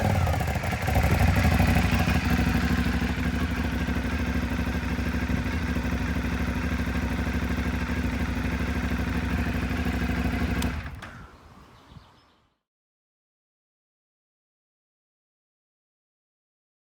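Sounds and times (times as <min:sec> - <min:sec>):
motorcycle engine running: 0:00.0 - 0:11.4.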